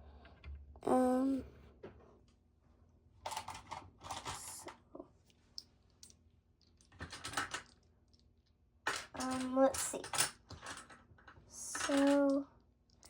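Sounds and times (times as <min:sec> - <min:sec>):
plastic bricks clicking: 0:06.8 - 0:08.2, 0:11.7 - 0:12.4.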